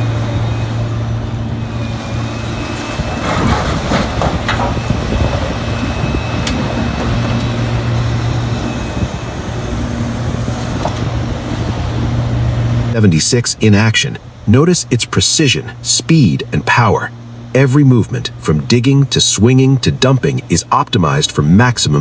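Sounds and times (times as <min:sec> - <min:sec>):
diesel excavator humming: 0:00.0 - 0:22.0
rattling and knocks: 0:02.0 - 0:12.0.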